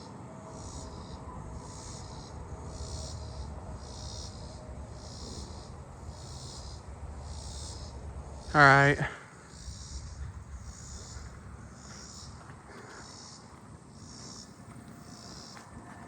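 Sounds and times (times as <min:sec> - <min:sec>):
cicadas pulsing buzz: 0:00.0 - 0:16.0
low rumble: 0:09.4 - 0:12.6.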